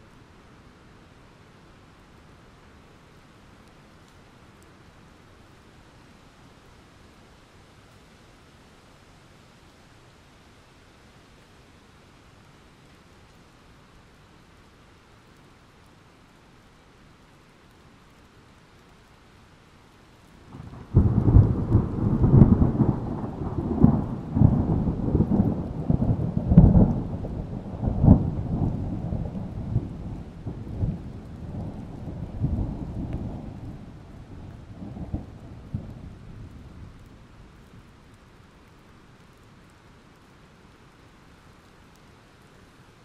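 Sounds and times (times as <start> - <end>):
thunder rumbling and cracking: 20.5 - 37.2.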